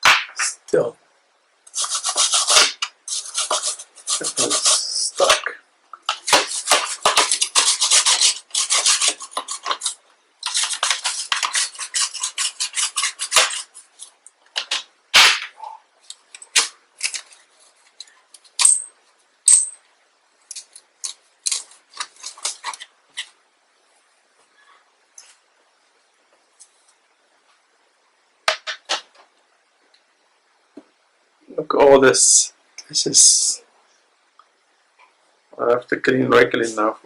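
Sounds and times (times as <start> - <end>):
bristle brush scrubbing plastic: 1.7 - 5.5, 6.1 - 14.1.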